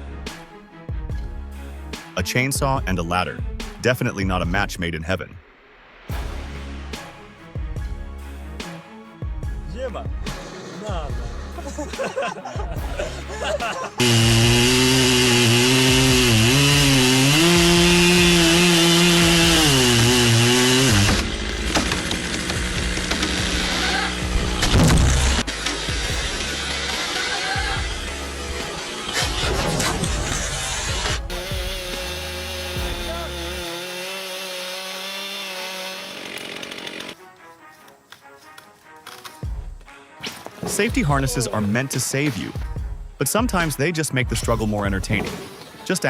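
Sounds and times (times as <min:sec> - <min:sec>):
background music: 0:00.0 - 0:36.0, 0:36.9 - 0:46.0
chainsaw engine running: 0:14.0 - 0:37.2.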